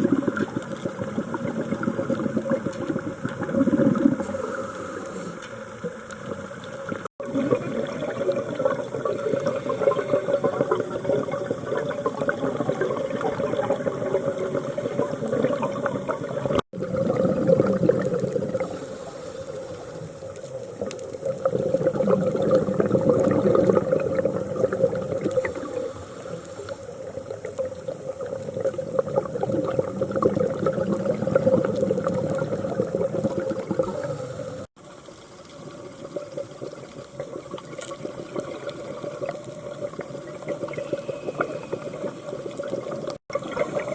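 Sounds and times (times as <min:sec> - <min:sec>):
diver breathing through regulator: 0:03.7 - 0:05.6, 0:18.6 - 0:20.0, 0:40.6 - 0:42.2.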